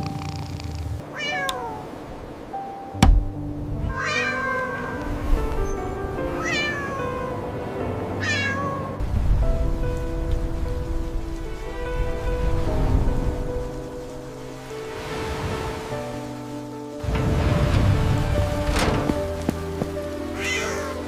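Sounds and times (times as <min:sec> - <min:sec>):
background music: 0:00.0 - 0:21.0
cat meowing: 0:01.0 - 0:01.9, 0:03.9 - 0:05.1, 0:06.4 - 0:07.2, 0:08.2 - 0:09.0, 0:20.4 - 0:21.0
sharp knock: 0:03.0 - 0:03.4.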